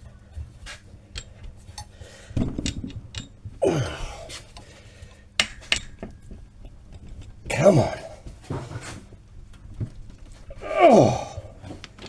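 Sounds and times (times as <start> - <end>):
metal clicks and knocks: 1.1 - 3.6, 5.4 - 7.5
metal groaning: 10.4 - 11.8.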